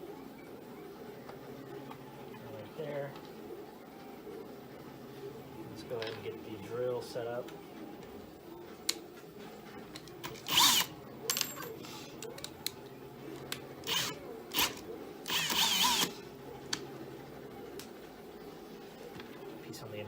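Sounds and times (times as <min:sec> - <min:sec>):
power drill whirring: 0:10.2 - 0:10.9, 0:13.8 - 0:16.2.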